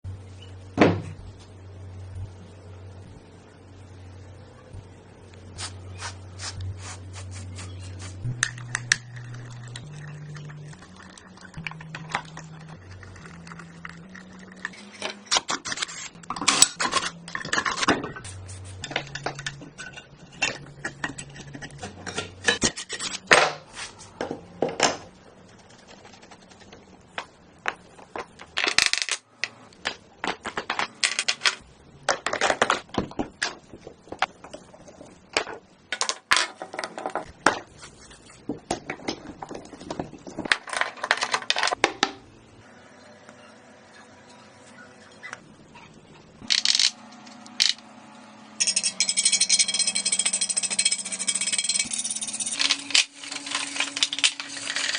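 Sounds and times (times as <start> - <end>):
hard objects clattering: 48.6 - 54.9.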